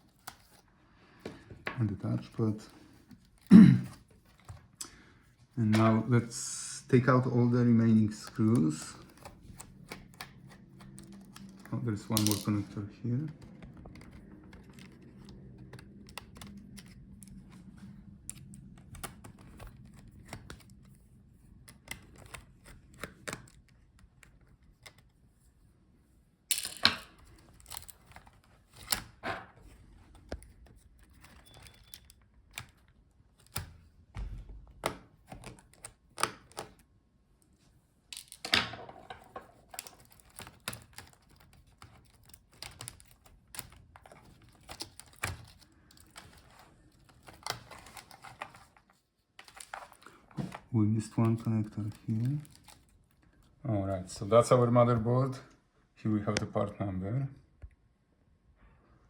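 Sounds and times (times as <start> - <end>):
laptop parts clicking and tapping: 8.3 - 25.2, 26.5 - 36.9, 38.2 - 38.6, 39.2 - 48.8.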